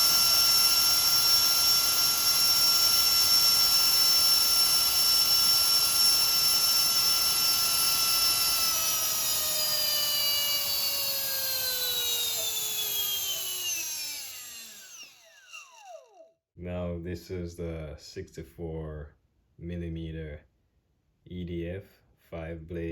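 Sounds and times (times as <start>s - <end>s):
electric fan whining and spooling down: 0.0s - 16.3s.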